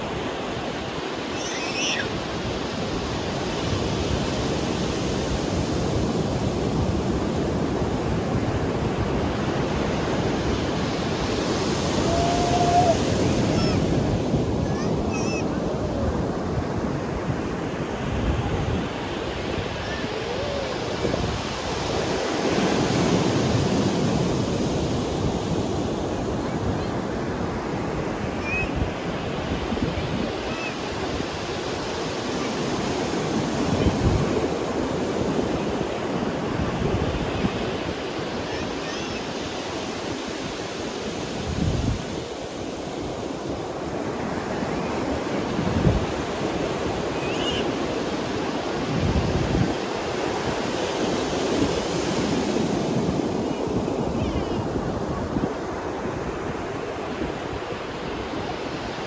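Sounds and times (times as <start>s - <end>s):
ocean surf on beach: 0.0s - 59.0s.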